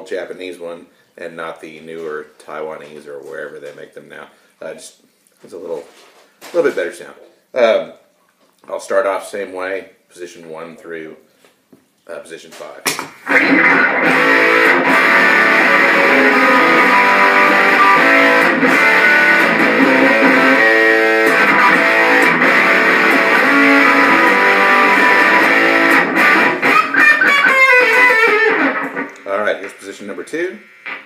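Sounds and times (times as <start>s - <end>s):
distorted electric guitar: 13.2s - 31.0s.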